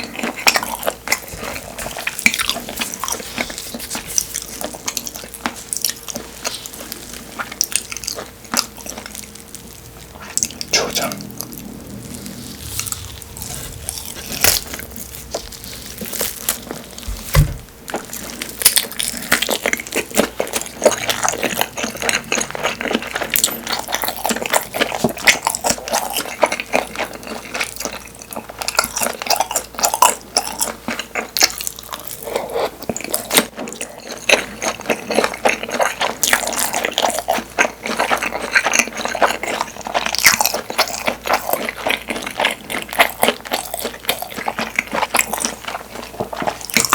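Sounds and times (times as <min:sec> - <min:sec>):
wet chewing mouth sounds: 0:00.0 - 0:17.2
low thump: 0:12.3 - 0:18.1.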